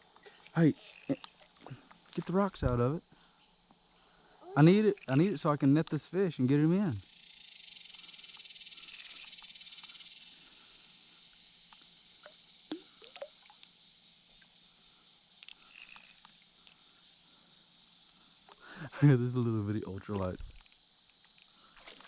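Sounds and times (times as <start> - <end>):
insects droning: 0.0 - 22.0
faint clicks: 20.4 - 22.0.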